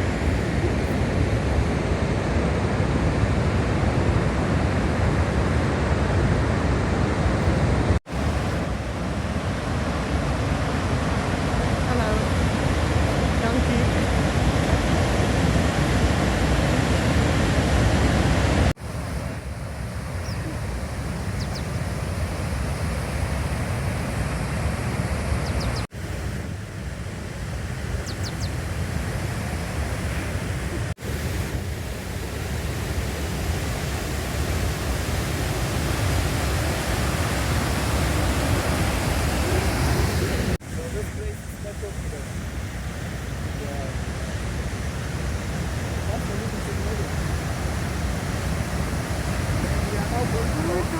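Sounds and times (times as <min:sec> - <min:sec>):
waterfall rushing: 0:00.0 - 0:50.9
wind buffeting microphone: 0:42.1 - 0:50.9.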